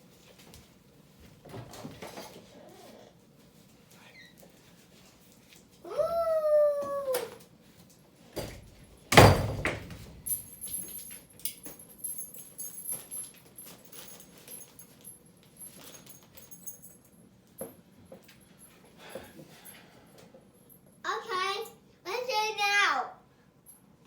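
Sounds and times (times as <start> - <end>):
dog whining: 5.9 - 7.4.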